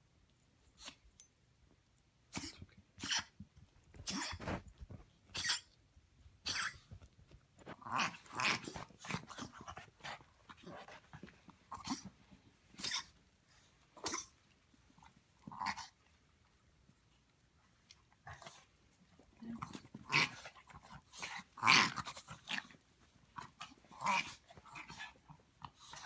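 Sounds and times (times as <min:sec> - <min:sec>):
pet coughing and snorting: 0:02.3 - 0:03.4, 0:04.0 - 0:04.6, 0:05.3 - 0:05.8, 0:06.4 - 0:07.0, 0:12.8 - 0:13.2, 0:14.0 - 0:14.4.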